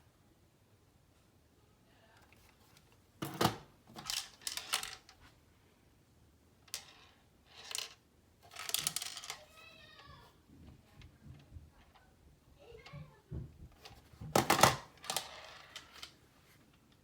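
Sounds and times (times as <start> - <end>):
hard objects clattering on table: 13.4 - 16.2.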